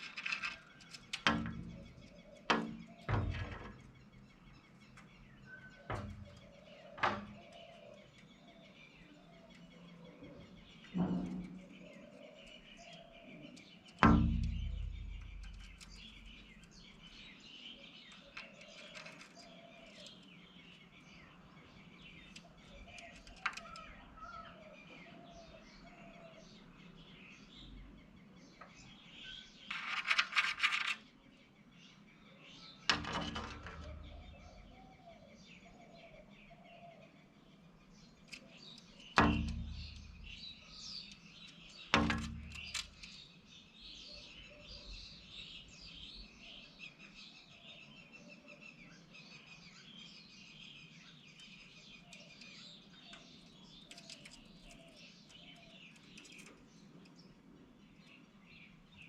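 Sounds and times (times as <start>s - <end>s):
birds chirping: 0.0s - 59.0s
sharp thumps: 14.0s - 16.4s, 39.1s - 40.6s, 41.6s - 43.1s.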